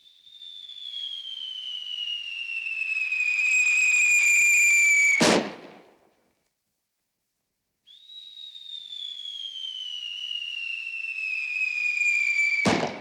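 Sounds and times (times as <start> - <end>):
descending cartoon whistle: 0.0 - 5.2, 7.9 - 12.8.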